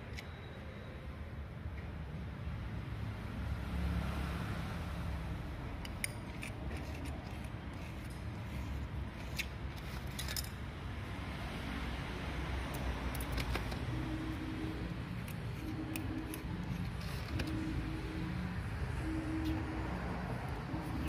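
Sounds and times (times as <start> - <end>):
steady low hum: 5.1 - 21.0
metallic clicks of tools: 5.8 - 10.7, 15.2 - 17.6.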